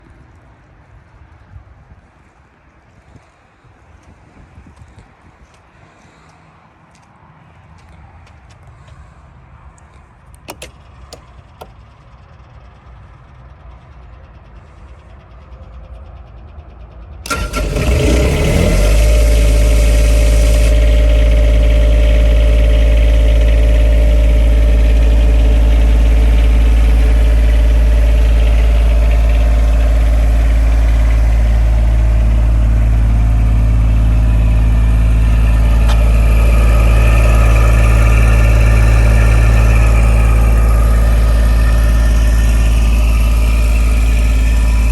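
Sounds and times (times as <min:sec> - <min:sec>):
diesel engine cranking and running: 0:10.3 - 0:44.9.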